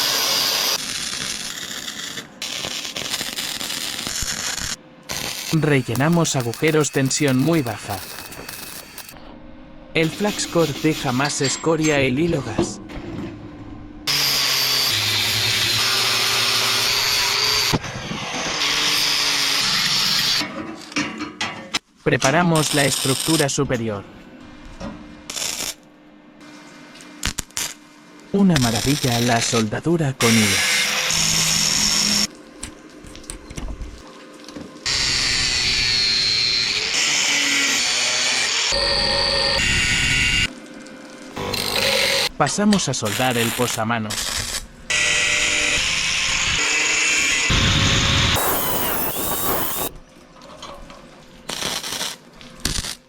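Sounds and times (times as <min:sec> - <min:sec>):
angle grinder on steel: 0:05.1 - 0:09.2, 0:43.1 - 0:49.9
angle grinder whining on steel: 0:05.1 - 0:09.2, 0:14.1 - 0:20.4, 0:34.9 - 0:40.5, 0:44.3 - 0:49.9.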